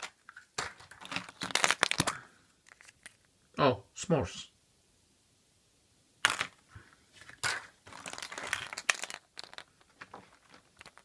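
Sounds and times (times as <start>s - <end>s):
wrapper crinkling and tearing: 0.0s - 3.3s, 6.2s - 6.6s, 7.2s - 11.0s.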